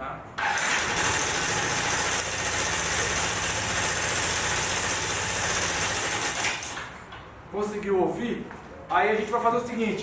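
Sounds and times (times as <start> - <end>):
scooter engine idling: 0.4 - 6.4
loud cam chain noise: 0.4 - 6.8.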